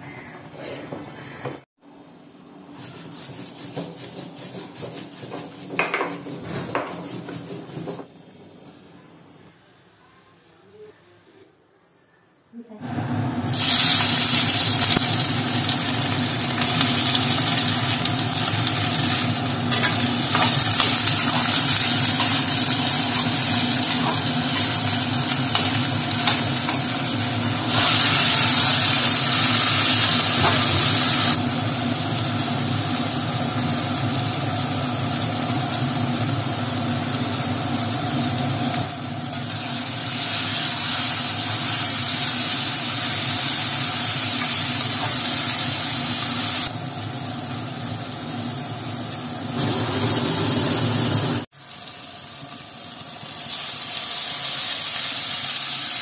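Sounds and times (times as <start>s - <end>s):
food sizzling in a pan: 13.5s - 56.0s.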